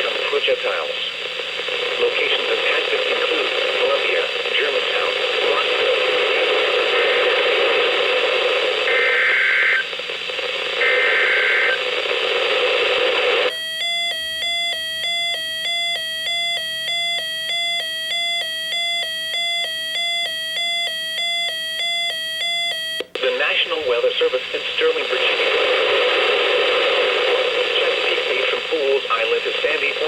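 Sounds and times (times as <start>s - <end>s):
radio broadcast hiss: 0.0s - 13.5s, 23.2s - 30.0s
two-pitch electronic alert alarm: 13.5s - 23.0s.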